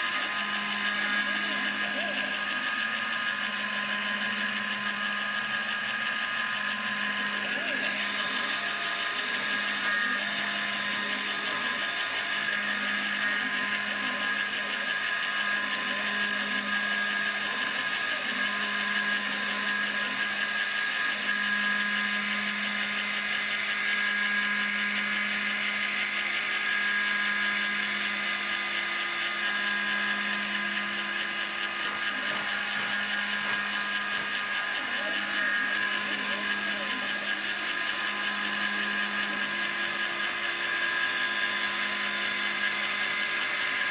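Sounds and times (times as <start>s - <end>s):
mill spindle whining: 0.0s - 43.9s
motor tones: 0.0s - 43.9s.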